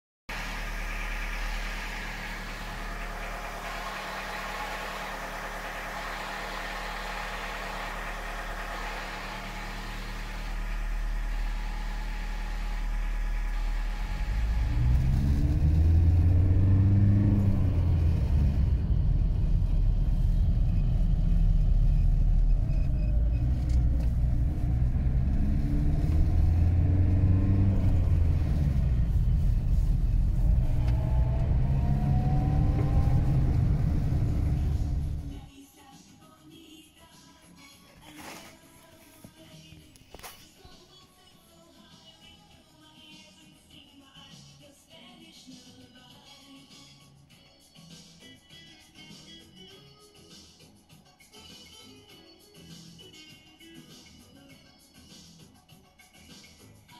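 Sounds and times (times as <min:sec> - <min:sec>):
gearbox bearing whine: 0:00.3 - 0:35.5
deep rumble: 0:08.0 - 0:35.5.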